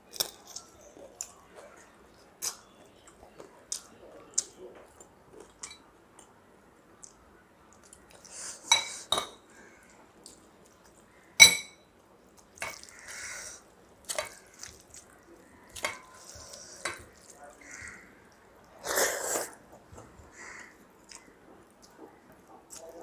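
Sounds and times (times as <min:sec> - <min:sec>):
dishes and cutlery clinking: 0:08.7 - 0:09.4, 0:11.4 - 0:11.8.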